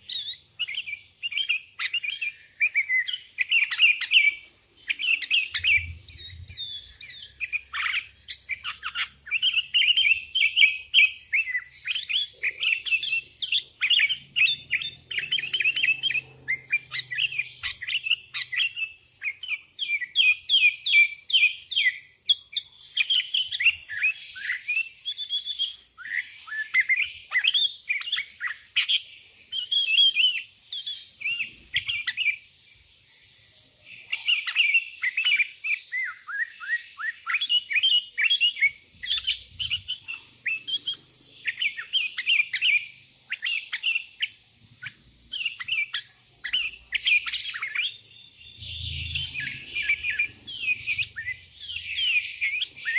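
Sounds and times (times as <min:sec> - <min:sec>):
bulbul singing: 0:00.0 - 0:52.9.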